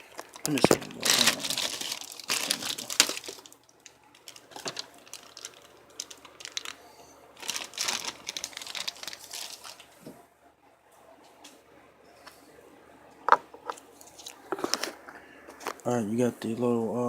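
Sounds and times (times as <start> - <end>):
packaging rustling and crinkling: 0.0 - 10.1, 14.0 - 15.8.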